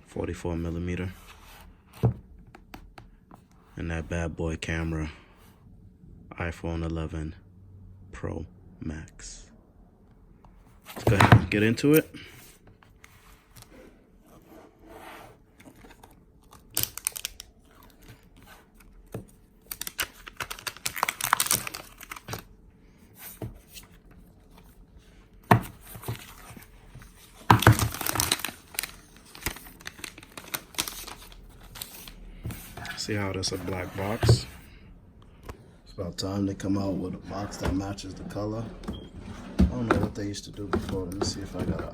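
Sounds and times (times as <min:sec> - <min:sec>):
plastic wrap tearing and crinkling: 0:19.7 - 0:22.3.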